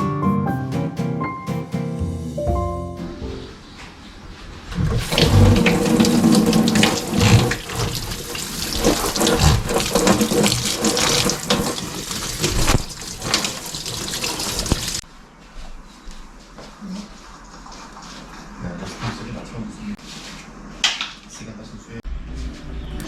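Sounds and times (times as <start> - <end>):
clatter of items being rinsed: 4.8 - 15.0
tap water running into sink: 4.9 - 15.0.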